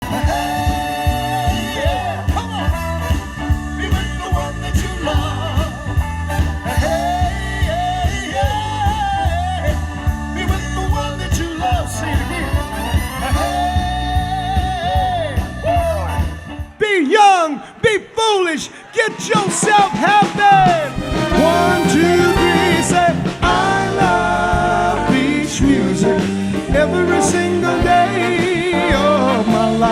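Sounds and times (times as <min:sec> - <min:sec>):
steady drum beat: 0:00.0 - 0:16.8, 0:19.0 - 0:29.9
band music with lead vocal: 0:00.0 - 0:29.9.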